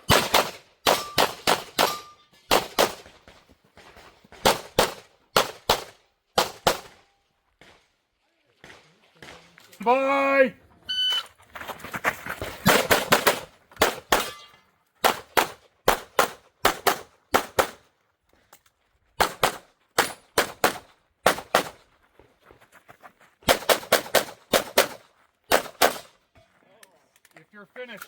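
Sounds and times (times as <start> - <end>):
pistol shots: 0.0 - 3.2, 4.4 - 7.0, 12.7 - 14.4, 15.0 - 17.8, 19.2 - 21.8, 23.5 - 26.1.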